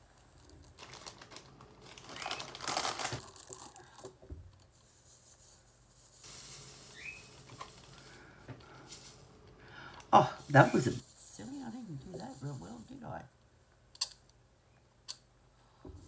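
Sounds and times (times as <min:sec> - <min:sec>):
plastic bag crinkling: 0:00.3 - 0:04.2, 0:05.0 - 0:13.0.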